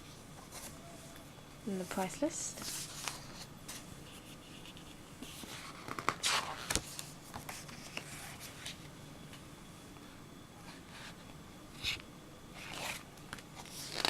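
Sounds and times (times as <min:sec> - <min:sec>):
paper rustling and scraping: 0:01.9 - 0:08.8, 0:12.6 - 0:14.0.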